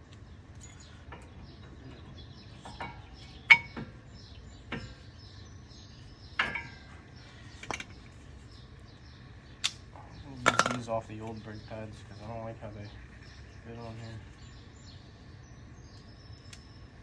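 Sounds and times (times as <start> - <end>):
birds chirping faintly: 0.0 - 17.0.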